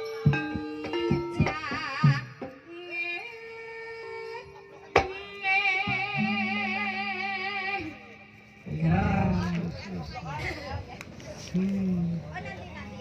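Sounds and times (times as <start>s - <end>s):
metallophone notes: 0.0s - 2.8s, 3.9s - 9.1s.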